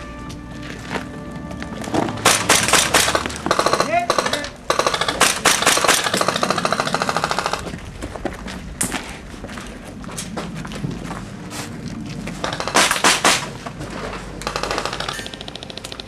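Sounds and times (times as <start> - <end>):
airsoft guns firing: 2.2 - 7.7, 12.4 - 13.6, 14.4 - 15.8.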